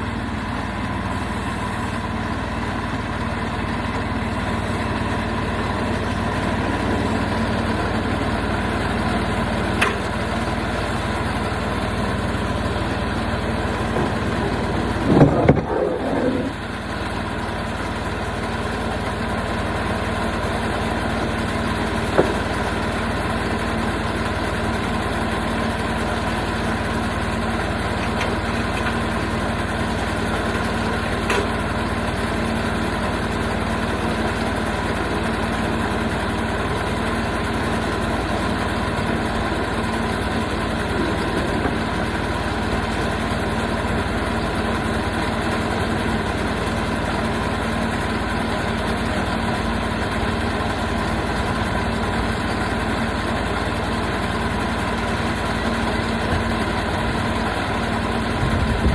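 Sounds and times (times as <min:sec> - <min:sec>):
sawmill engine running: 0:00.0 - 0:58.9
short loud clatter: 0:13.7 - 0:16.6.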